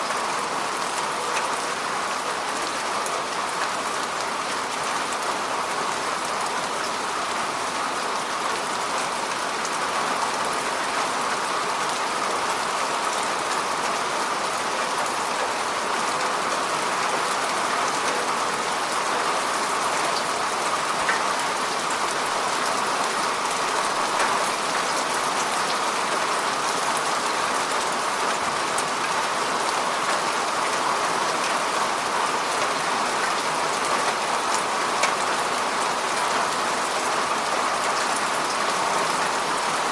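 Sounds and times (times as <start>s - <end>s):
rain falling on lake: 0.0s - 39.9s.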